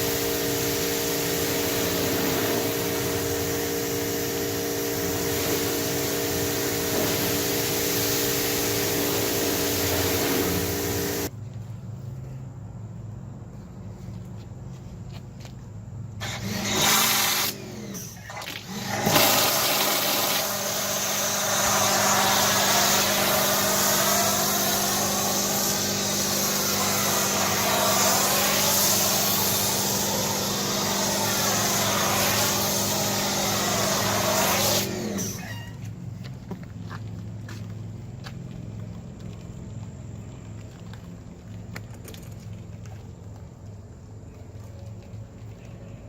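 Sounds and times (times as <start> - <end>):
pressure washer spraying: 0.0 - 11.3, 16.2 - 35.8
motor hum: 16.2 - 46.0.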